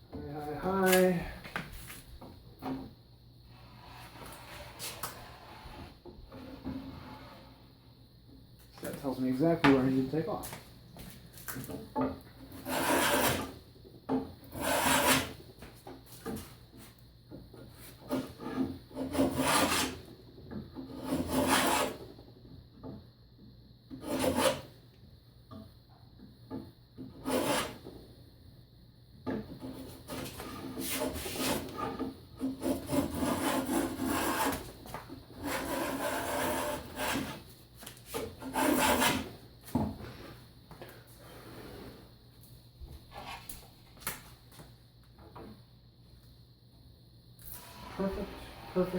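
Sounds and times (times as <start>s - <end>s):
hand plane shaving wood: 12.6s - 13.5s, 14.5s - 15.4s, 18.0s - 20.0s, 20.9s - 22.0s, 24.0s - 24.7s, 27.2s - 27.8s, 29.7s - 34.6s, 35.4s - 37.4s, 38.4s - 39.3s.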